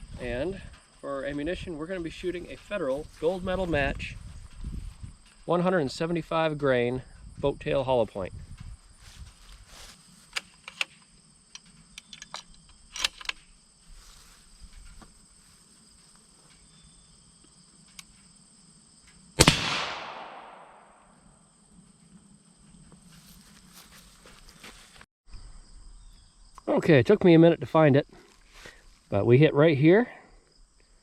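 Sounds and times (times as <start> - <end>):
insect buzz: 8.5 - 27.4, 30.2 - 31.0
suppressed rifle shot: 19.4 - 21.2.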